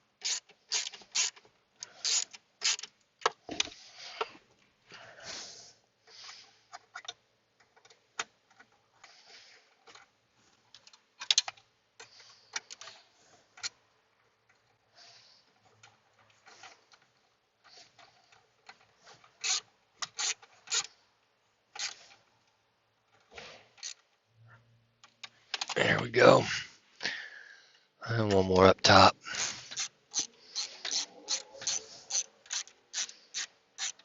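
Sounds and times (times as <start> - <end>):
hand ratchet clicking: 0.2 - 2.9, 19.4 - 20.9, 21.8 - 22.0, 23.8 - 24.0, 29.4 - 34.0
tools and parts rattling: 0.2 - 4.6, 6.4 - 14.8, 15.4 - 21.0, 21.7 - 24.2, 29.3 - 34.0.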